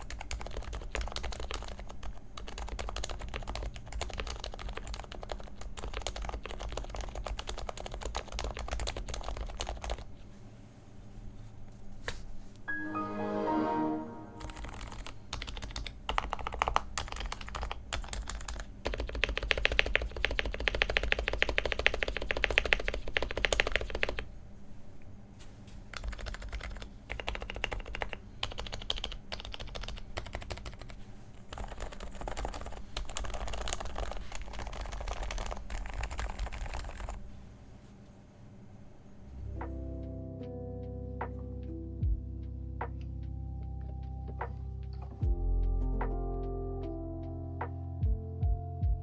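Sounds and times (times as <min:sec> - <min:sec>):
keyboard typing: 0:00.0 - 0:10.1, 0:14.3 - 0:24.3, 0:25.9 - 0:37.2.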